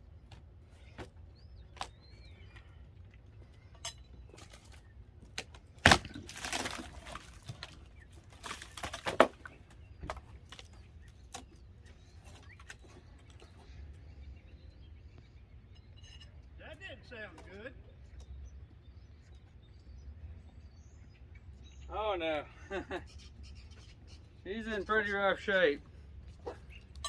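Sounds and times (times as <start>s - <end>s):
wood boards knocking and clattering: 8.4s - 10.3s.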